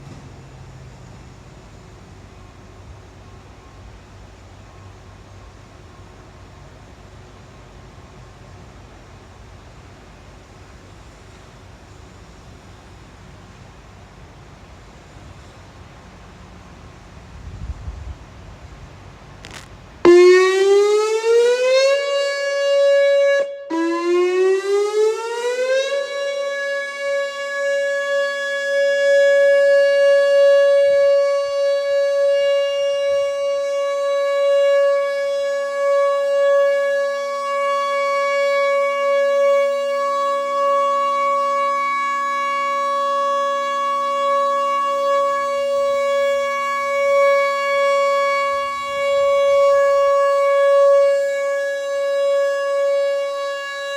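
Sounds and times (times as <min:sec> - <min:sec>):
warning siren steady tone: 0:19.4 - 0:53.9.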